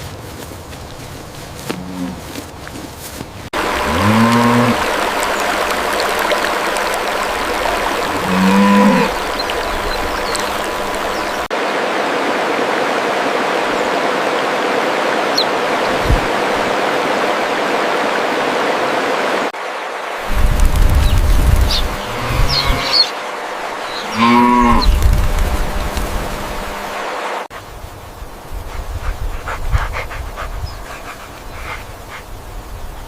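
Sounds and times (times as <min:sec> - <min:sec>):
running water rushing: 0:03.5 - 0:28.6
cow mooing: 0:03.6 - 0:05.0, 0:08.1 - 0:09.4, 0:24.0 - 0:25.0.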